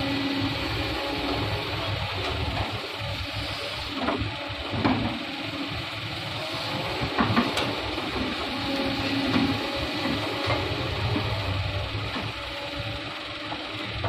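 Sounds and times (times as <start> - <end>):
excavator diesel engine running: 0.0 - 14.0.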